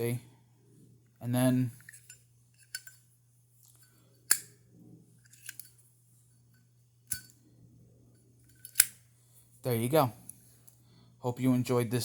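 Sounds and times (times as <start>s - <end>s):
lighter lid clicking open and shut: 4.3s - 4.6s, 8.6s - 9.0s.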